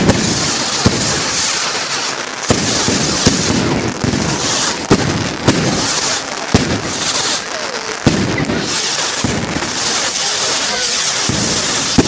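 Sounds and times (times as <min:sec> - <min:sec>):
fireworks bangs: 0:00.0 - 0:12.0
fireworks crackling and fizzing: 0:00.0 - 0:12.0.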